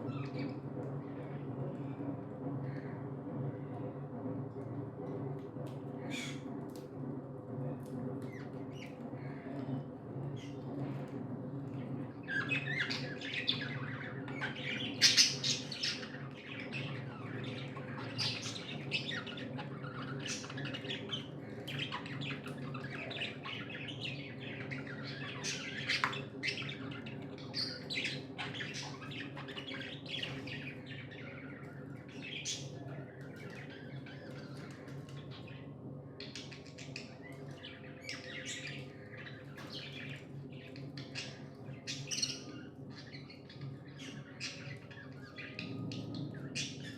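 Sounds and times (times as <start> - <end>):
steady low hum: 0.0 - 46.9
budgerigars chirping and squawking: 12.3 - 35.6, 36.2 - 46.9.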